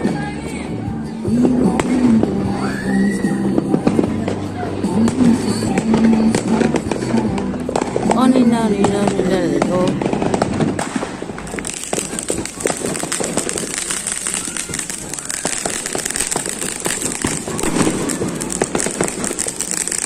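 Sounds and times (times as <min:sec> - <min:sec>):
fireworks and firecrackers popping: 0:00.0 - 0:20.0.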